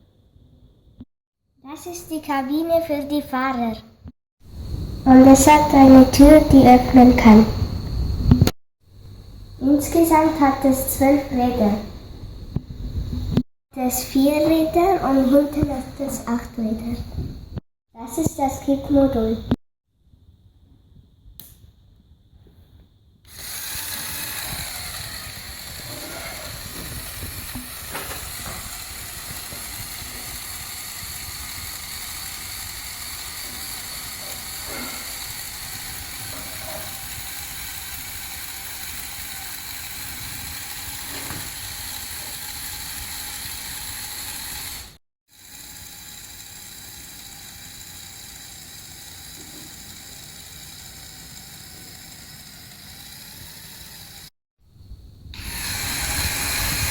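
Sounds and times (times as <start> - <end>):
toy electric motor whirring: 5.1 - 7.5, 9.6 - 11.8, 13.8 - 16.4, 23.3 - 54.3, 55.4 - 56.9
gear clicking: 23.3 - 54.3, 55.4 - 56.9.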